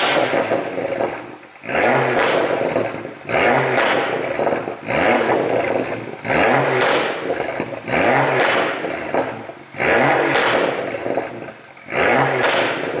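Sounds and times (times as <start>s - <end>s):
car exhaust revving: 0.0s - 13.0s
exhaust popping and crackling: 0.0s - 13.0s.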